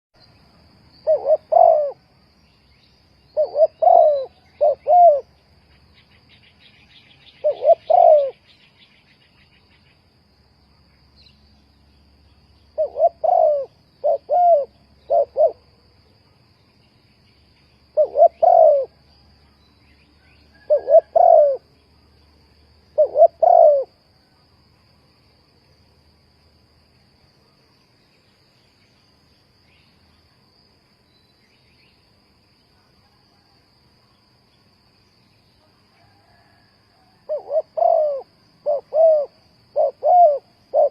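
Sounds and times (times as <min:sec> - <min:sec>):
high insect trill: 0:00.2 - 0:40.9
dove cooing: 0:01.0 - 0:02.0, 0:03.3 - 0:05.3, 0:07.3 - 0:08.5, 0:12.8 - 0:15.8, 0:17.9 - 0:19.1, 0:20.5 - 0:21.7, 0:22.9 - 0:24.0, 0:36.0 - 0:40.9.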